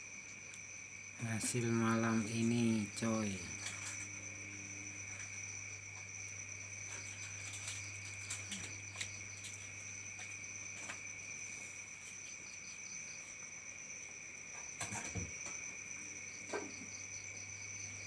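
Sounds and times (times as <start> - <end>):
low steady hum: 0.0 - 11.8
crickets trilling: 0.0 - 18.0.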